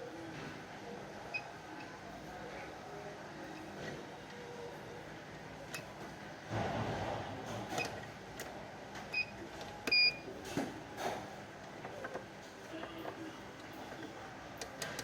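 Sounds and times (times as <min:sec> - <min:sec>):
multimeter continuity beeps: 0:09.1 - 0:10.2.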